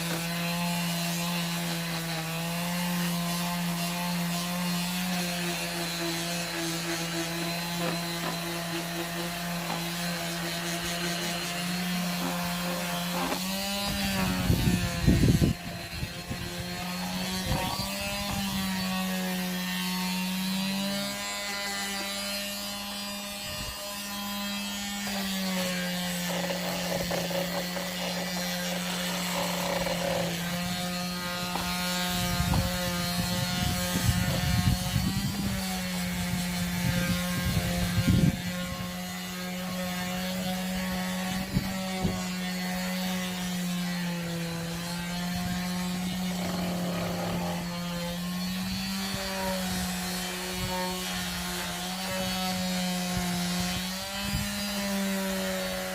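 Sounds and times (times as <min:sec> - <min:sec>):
disc sander on wood: 0:00.0 - 0:55.9
scraping: 0:05.1 - 0:35.8, 0:44.2 - 0:48.8.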